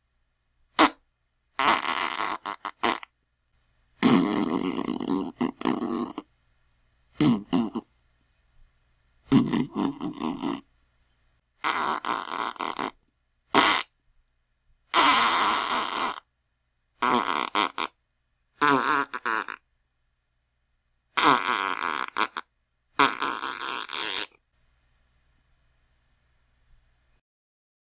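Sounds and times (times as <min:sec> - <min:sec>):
sputtering fart sounds: 0:00.8 - 0:01.0, 0:01.6 - 0:03.1, 0:04.0 - 0:06.3, 0:07.2 - 0:07.9, 0:09.3 - 0:10.7, 0:11.6 - 0:14.0, 0:14.9 - 0:16.3, 0:17.0 - 0:18.0, 0:18.6 - 0:19.6, 0:21.2 - 0:24.4.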